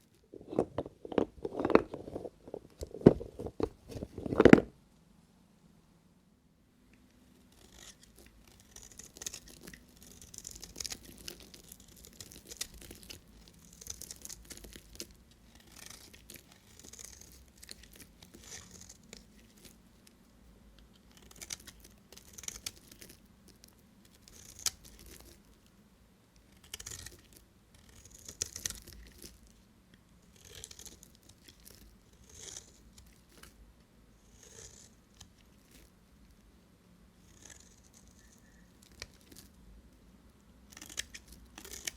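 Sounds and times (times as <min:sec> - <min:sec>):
knife scraping soap: 0:00.2 - 0:04.7, 0:07.4 - 0:20.2, 0:20.8 - 0:25.5, 0:26.5 - 0:29.5, 0:30.2 - 0:33.6, 0:34.2 - 0:35.9, 0:37.2 - 0:39.6, 0:40.7 - 0:41.9
soap crackling: 0:00.2 - 0:04.7, 0:07.6 - 0:19.8, 0:40.7 - 0:41.9.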